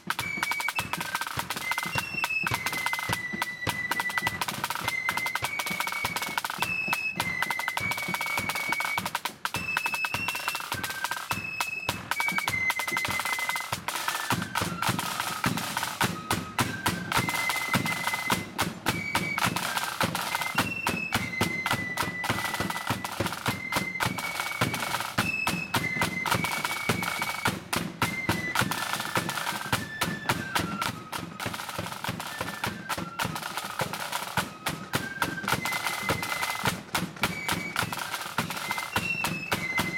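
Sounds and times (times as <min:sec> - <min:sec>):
flute melody: 0:00.0 - 0:39.9
snare drum strokes: 0:00.0 - 0:39.9.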